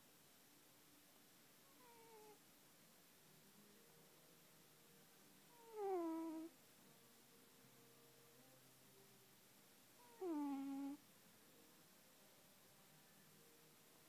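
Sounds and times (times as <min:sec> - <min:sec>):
cat meowing: 0:05.6 - 0:06.5, 0:10.0 - 0:11.0.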